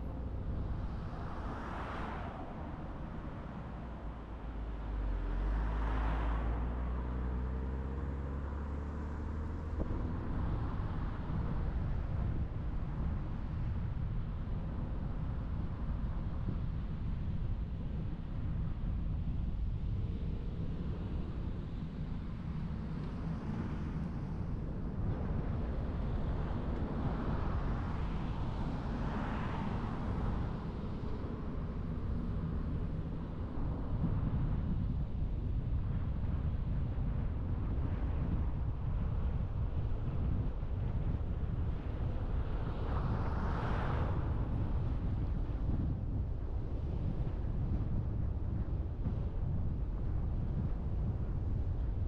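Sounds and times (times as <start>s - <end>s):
tyres rumbling on road: 0.0s - 16.4s
car tyre and road noise: 0.0s - 52.0s.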